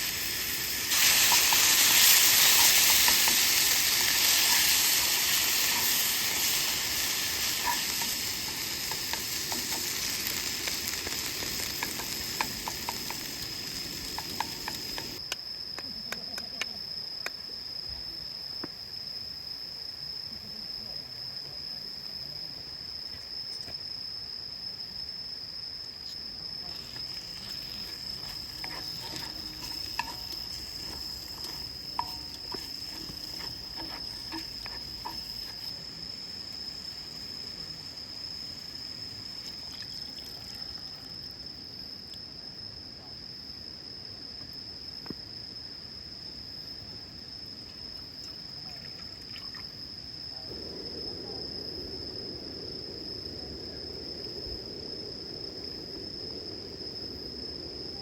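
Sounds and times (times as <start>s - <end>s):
insect trilling: 0.0s - 15.2s, 25.8s - 41.7s.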